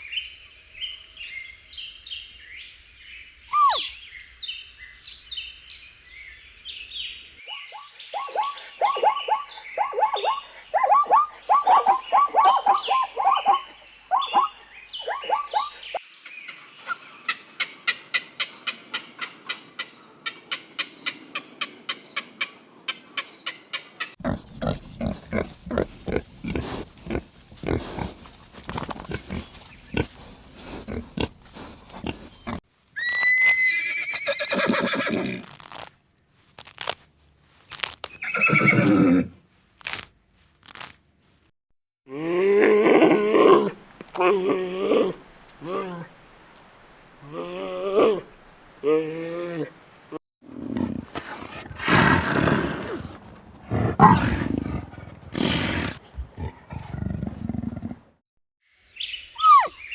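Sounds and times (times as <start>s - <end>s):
short evenly spaced animal calls: 7.5s - 24.2s
small birds chirping: 23.1s - 33.1s.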